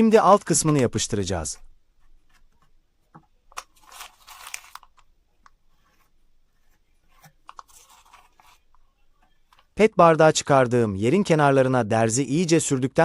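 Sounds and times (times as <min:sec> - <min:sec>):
craft materials crinkling and scraping: 0:03.6 - 0:05.1, 0:05.7 - 0:08.8.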